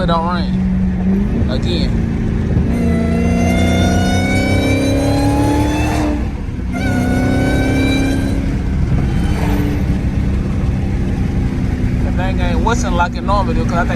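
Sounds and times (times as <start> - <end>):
car engine accelerating hard: 0.0 - 13.9
supercharger whistle: 2.7 - 11.3.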